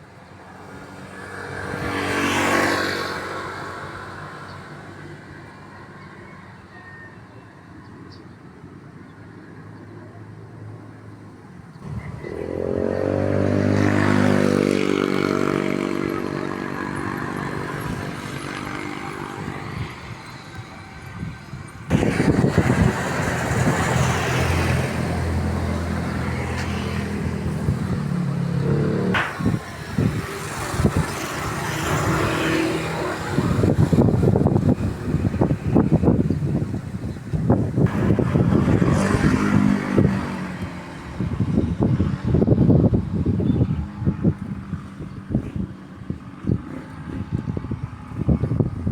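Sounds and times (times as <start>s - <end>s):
small engine revving: 11.8s - 19.6s, 21.9s - 36.2s, 37.5s - 42.6s
wind on microphone: 11.8s - 48.9s.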